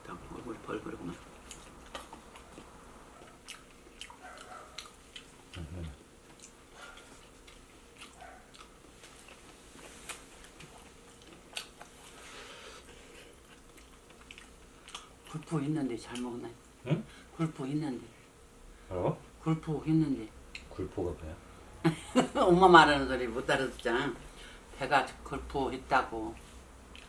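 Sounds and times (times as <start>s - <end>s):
person chewing and eating: 0.9s - 15.5s, 26.3s - 27.0s.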